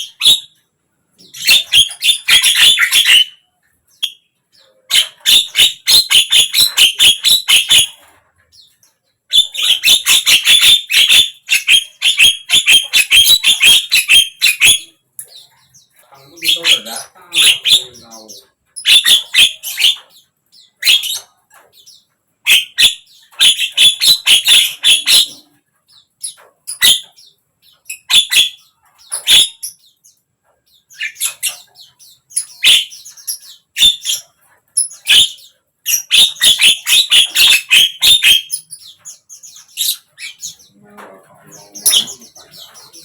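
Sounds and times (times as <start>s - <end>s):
myna harsh chattering calls: 1.2s - 3.4s, 9.3s - 21.3s, 22.4s - 29.9s, 30.9s - 43.0s.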